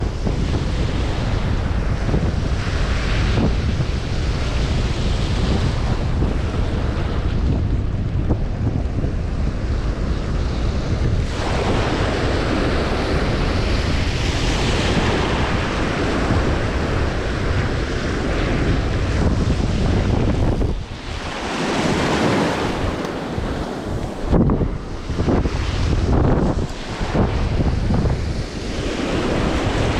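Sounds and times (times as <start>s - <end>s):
wind buffeting the microphone: 0.0s - 29.9s
surf washing in: 9.3s - 29.9s.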